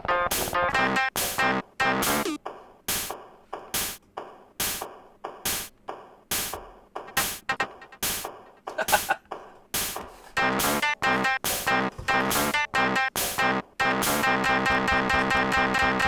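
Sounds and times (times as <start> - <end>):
electronic beat: 0.0 - 16.0
hissy percussion hit: 1.2 - 3.2, 7.2 - 8.3, 13.2 - 14.2.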